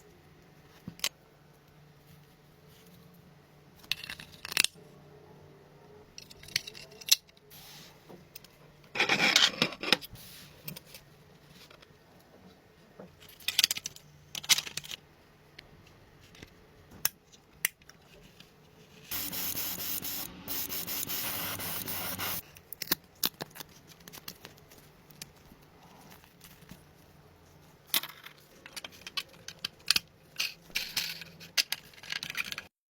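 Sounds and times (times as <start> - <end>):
aerosol spray hiss: 19.1 - 22.4.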